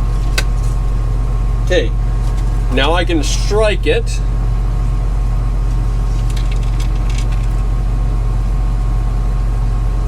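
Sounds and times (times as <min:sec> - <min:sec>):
combine harvester droning: 0:00.0 - 0:10.0.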